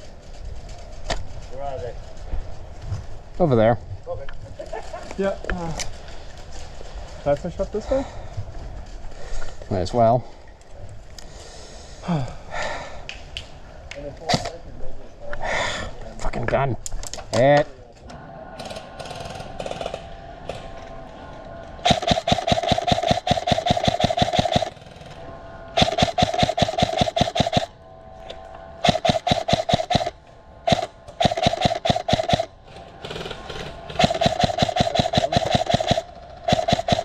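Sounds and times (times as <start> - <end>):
airsoft rifle firing bursts: 21.8 - 25.0, 25.7 - 27.7, 28.8 - 32.5, 33.3 - 37.0.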